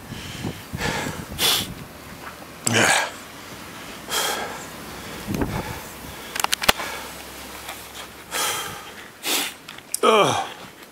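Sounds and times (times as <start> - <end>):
person breathing hard: 0.0 - 1.7, 2.7 - 10.7
sharp clicks: 6.3 - 6.8.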